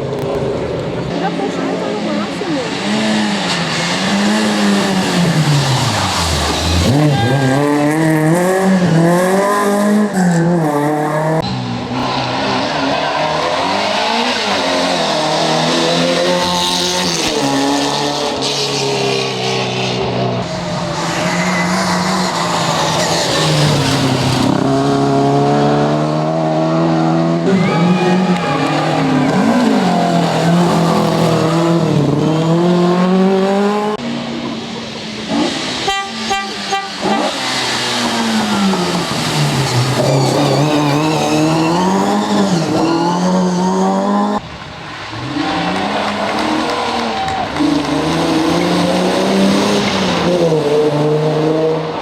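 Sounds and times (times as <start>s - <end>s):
rally car engines revving: 0.0s - 52.0s.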